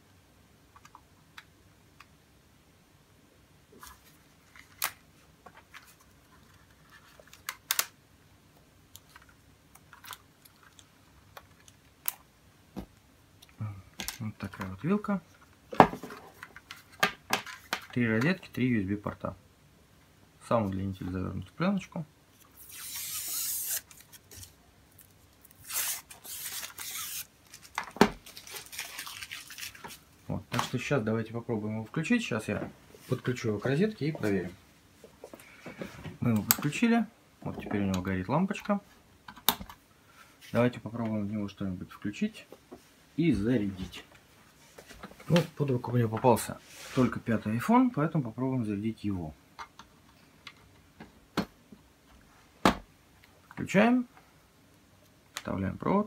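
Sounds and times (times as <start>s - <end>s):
plastic film peeling off: 22.5s - 30.0s.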